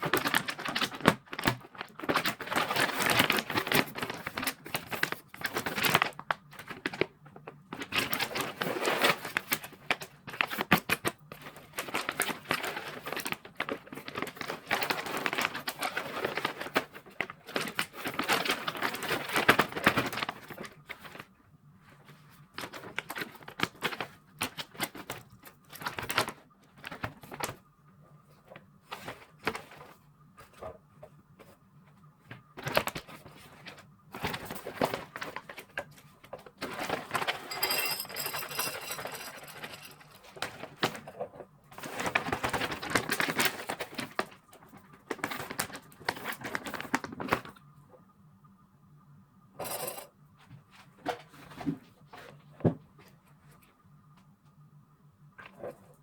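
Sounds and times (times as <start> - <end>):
packaging crinkling and tearing: 0.0 - 7.0, 41.8 - 47.6
packaging rustling: 32.3 - 47.6.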